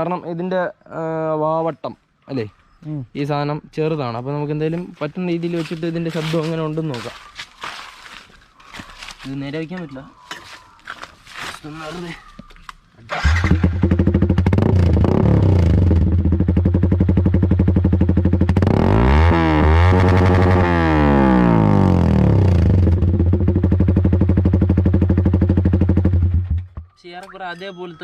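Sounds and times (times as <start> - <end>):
motorcycle engine idling and revving: 13.1 - 26.9.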